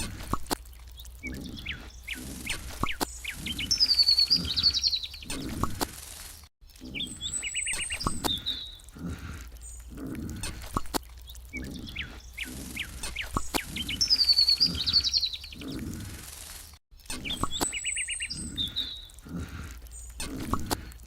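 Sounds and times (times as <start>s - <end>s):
background animal sounds: 0.0s - 21.0s
small birds chirping and trilling: 0.0s - 21.0s.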